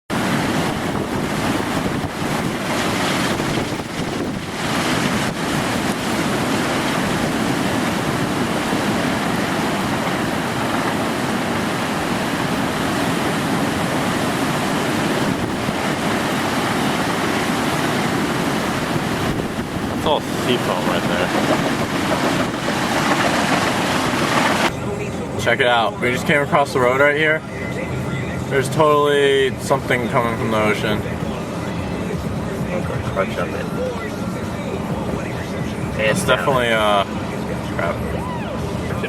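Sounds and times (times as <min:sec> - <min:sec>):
wind buffeting microphone: 0:00.1 - 0:25.4
heavy surf: 0:00.1 - 0:39.0.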